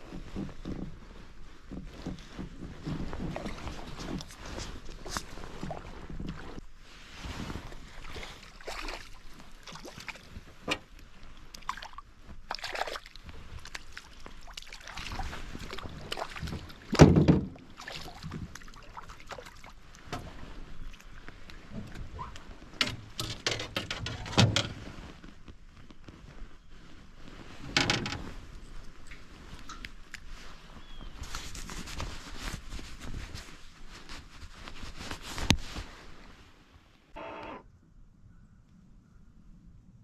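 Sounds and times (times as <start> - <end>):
gear knocking and rattling in boat: 15.8 - 18.6, 21.7 - 24.9, 27.7 - 28.4.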